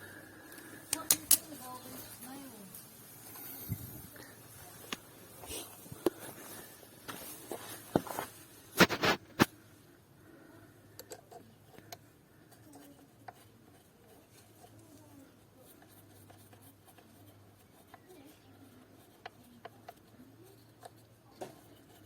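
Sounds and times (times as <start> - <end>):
faint handling clicks: 0.5 - 1.8.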